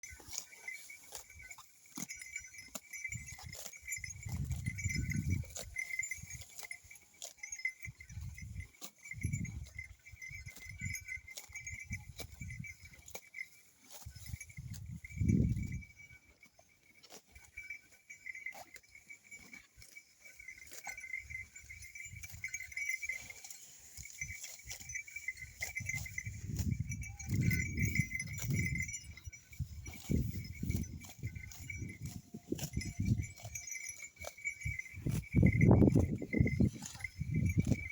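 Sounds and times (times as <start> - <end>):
animal bells jingling: 0.0 - 37.9.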